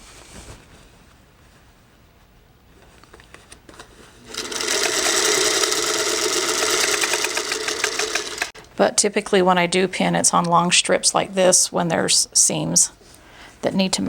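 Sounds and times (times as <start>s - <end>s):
electric sewing machine running: 4.3s - 8.6s.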